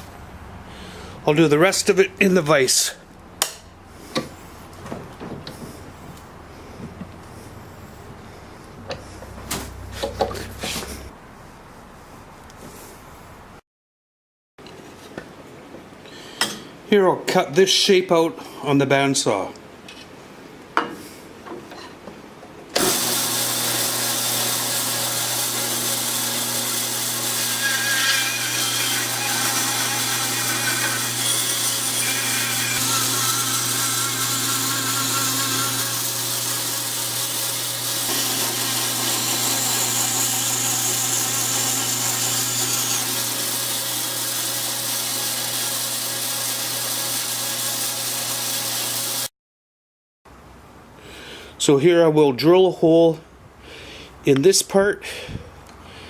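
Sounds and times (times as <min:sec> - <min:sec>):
bandsaw cutting: 0:22.8 - 0:49.3.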